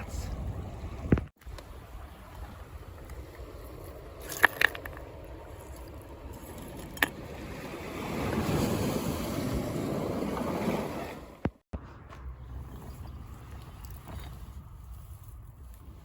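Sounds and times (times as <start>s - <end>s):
water sloshing and splashing: 0.6s - 11.6s.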